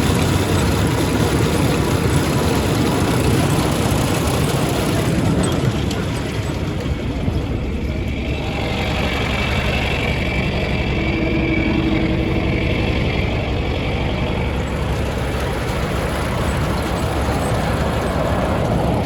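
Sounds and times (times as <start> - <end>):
engine running: 0.0 - 19.0
faint high whine: 4.9 - 19.0.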